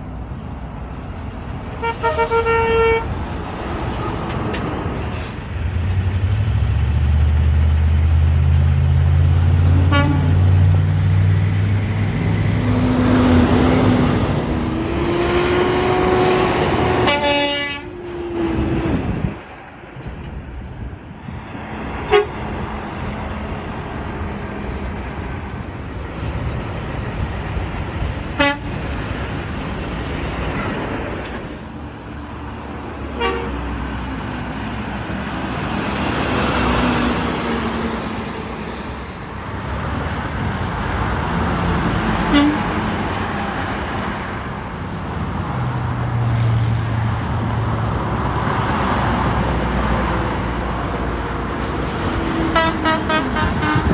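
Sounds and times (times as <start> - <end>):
cars and trucks passing: 0.0 - 53.9.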